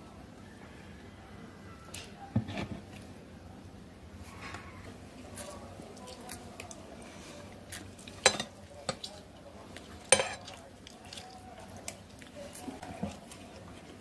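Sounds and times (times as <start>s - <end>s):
cutlery and dishes clinking: 8.2s - 9.1s, 10.1s - 10.5s.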